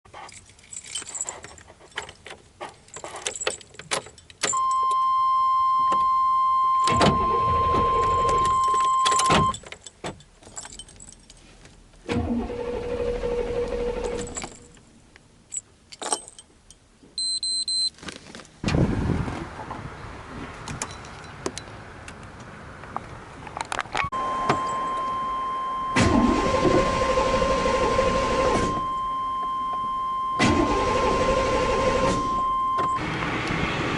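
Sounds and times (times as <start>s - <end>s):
keys jangling: 0.1s - 4.6s, 8.5s - 11.7s, 15.5s - 16.8s
high warning tone: 4.5s - 9.6s, 24.1s - 33.0s
car engine cranking: 12.0s - 14.7s, 23.7s - 33.8s.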